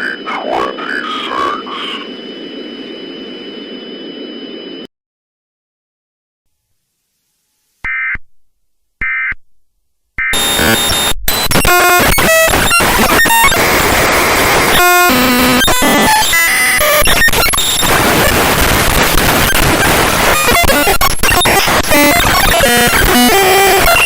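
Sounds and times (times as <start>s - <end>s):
distorted glitchy electronic noise: 0.0s - 2.1s, 10.3s - 24.0s.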